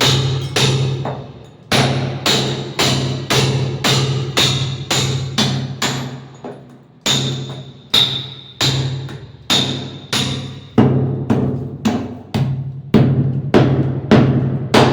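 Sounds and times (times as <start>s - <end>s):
hammer striking metal pan: 0.0s - 6.2s.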